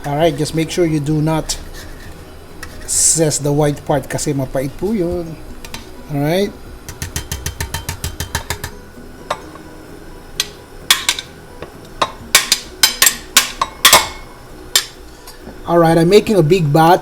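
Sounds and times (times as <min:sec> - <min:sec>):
utensils clinking against a bowl: 0:06.9 - 0:09.6, 0:12.0 - 0:15.4.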